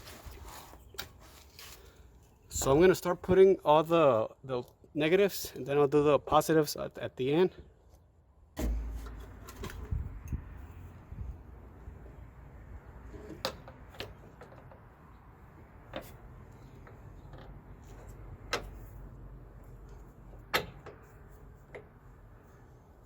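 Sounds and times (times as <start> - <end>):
low steady hum: 8.6 - 13.0.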